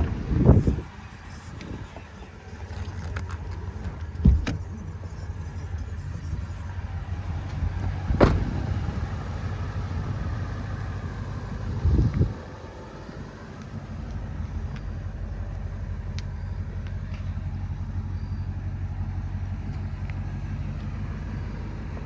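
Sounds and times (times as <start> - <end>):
short thumps: 0.0 - 0.8, 7.8 - 8.8
engine idling rumble: 0.0 - 22.0.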